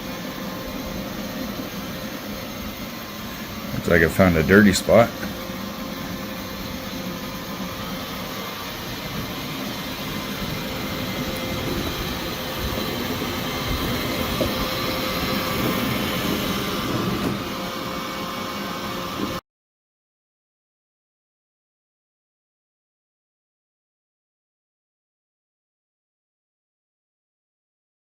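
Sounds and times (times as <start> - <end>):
robot vacuum running: 0.0 - 19.4.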